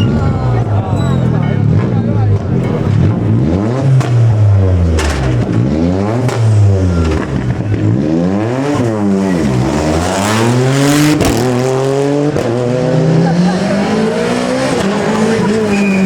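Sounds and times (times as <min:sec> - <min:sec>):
rally car engine revving: 0:00.0 - 0:16.0
sharp crack: 0:03.8 - 0:07.9.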